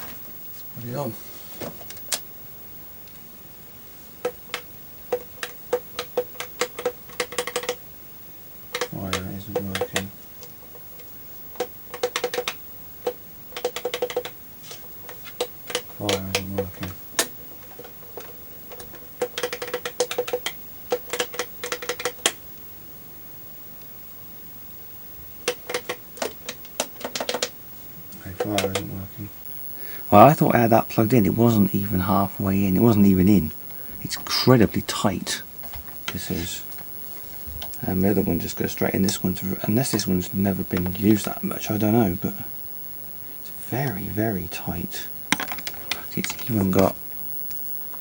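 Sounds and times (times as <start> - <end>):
plastic joypad buttons clicking: 4.2 - 7.8, 11.6 - 14.4, 15.1 - 22.4, 25.4 - 27.6, 28.4 - 28.9, 45.3 - 46.9.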